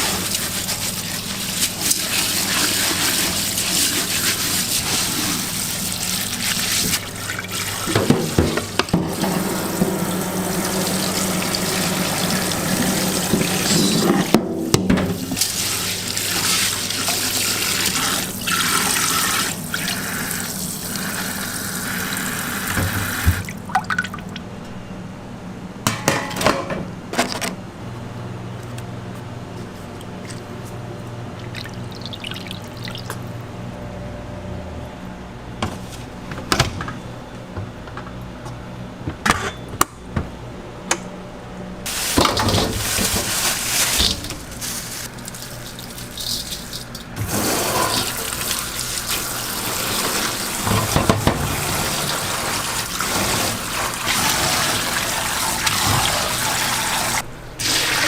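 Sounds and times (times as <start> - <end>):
water running into a sink: 0.0 - 14.4, 15.1 - 24.1, 41.9 - 58.0.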